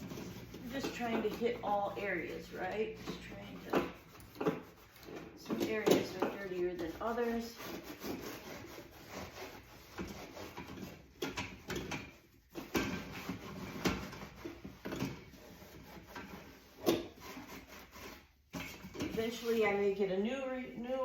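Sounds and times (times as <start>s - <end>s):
sponge scrubbing dishwasher walls: 0.0s - 21.0s.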